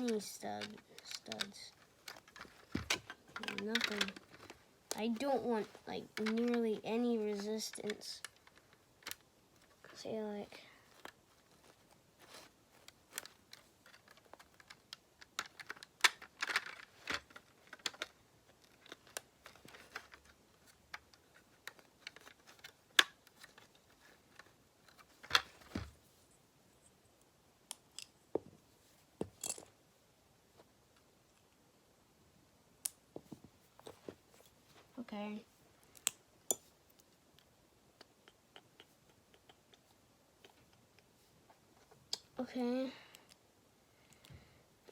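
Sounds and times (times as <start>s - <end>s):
plastic bricks clicking and rattling: 0.0s - 9.7s, 12.8s - 25.8s.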